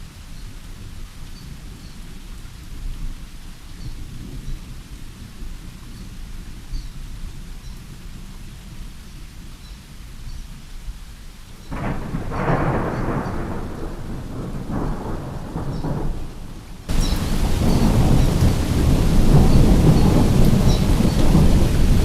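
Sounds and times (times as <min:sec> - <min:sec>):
rain: 0:00.0 - 0:22.0
thunder rolling: 0:11.7 - 0:22.0.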